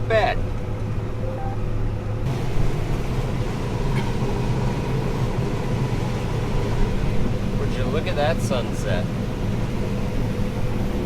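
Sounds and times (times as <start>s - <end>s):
combine harvester engine drone: 0.0s - 11.0s.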